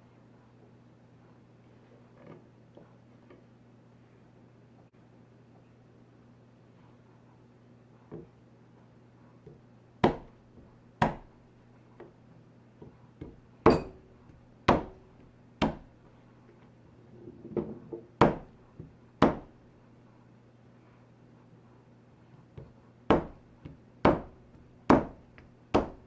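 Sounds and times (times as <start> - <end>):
soft taps and knocks: 8.1 - 8.4.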